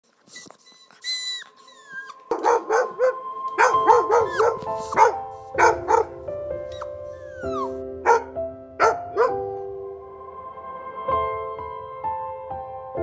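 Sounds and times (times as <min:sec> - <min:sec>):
dog whining with high yelps: 0:00.3 - 0:09.4
background music with held notes: 0:01.7 - 0:13.0.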